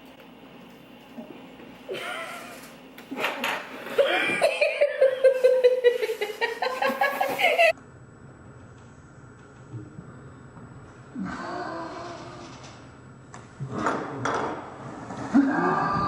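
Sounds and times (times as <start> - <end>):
high-pitched laughter: 4.0 - 7.7.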